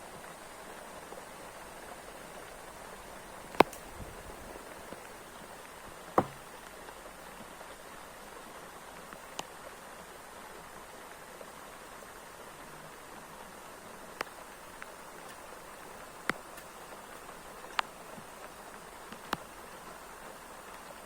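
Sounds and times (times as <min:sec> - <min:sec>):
steady rain in forest: 0:00.0 - 0:21.0
sharp knocks: 0:06.2 - 0:06.5.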